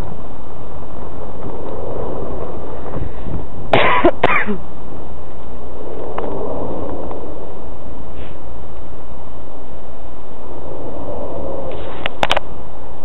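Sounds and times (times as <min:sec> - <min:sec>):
steady wave-like noise: 0:00.0 - 0:13.0
person coughing: 0:03.8 - 0:04.6.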